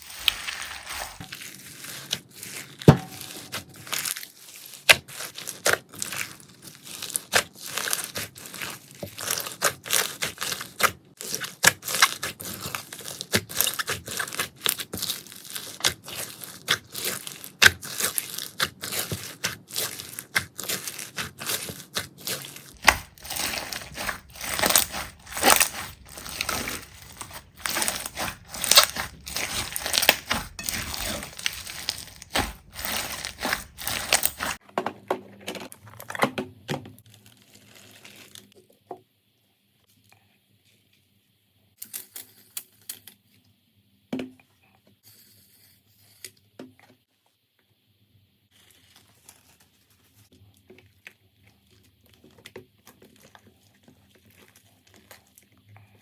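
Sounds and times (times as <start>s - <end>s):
slime crackling and popping: 0.0s - 34.6s.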